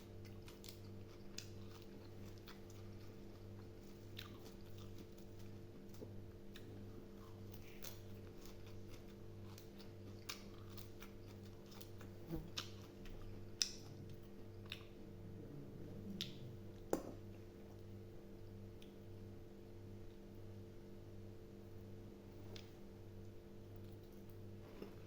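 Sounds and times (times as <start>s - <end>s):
low hum: 13.1s - 25.0s.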